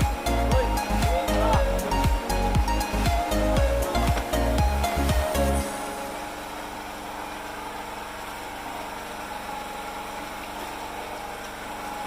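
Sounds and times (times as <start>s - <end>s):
small engine idling: 0.0s - 12.0s.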